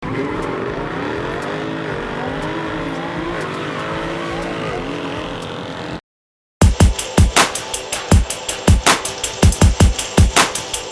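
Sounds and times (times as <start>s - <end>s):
car engines revving: 0.0s - 6.0s.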